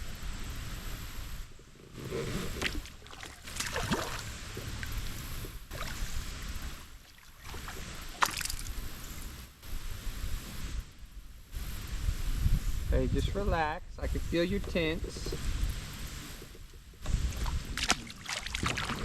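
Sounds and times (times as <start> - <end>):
water splashing around kayak: 2.0 - 8.9, 16.2 - 19.0.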